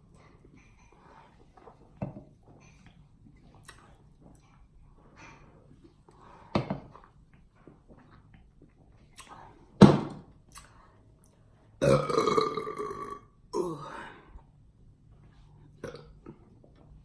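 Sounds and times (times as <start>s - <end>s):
woman burping: 11.8s - 14.0s, 15.8s - 16.2s.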